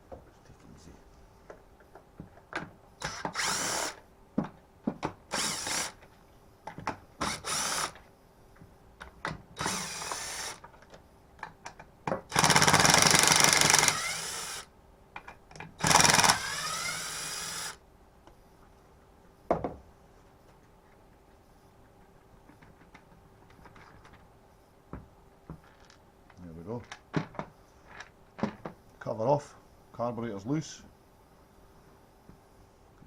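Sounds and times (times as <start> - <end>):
cordless drill spinning: 3.0 - 4.0, 5.3 - 6.0, 7.2 - 8.0, 9.6 - 10.6, 12.3 - 14.7, 15.8 - 17.8.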